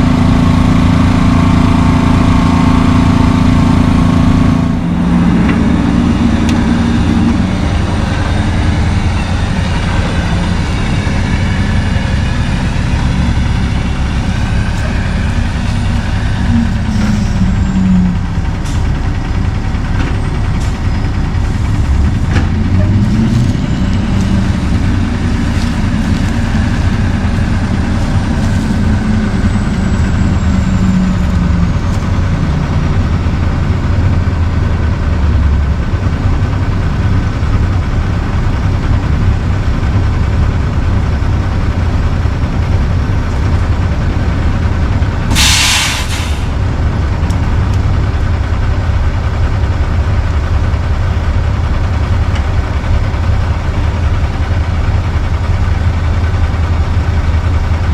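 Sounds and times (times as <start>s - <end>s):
truck diesel engine rumbling: 0.0s - 57.9s
air brake hiss: 45.3s - 46.5s.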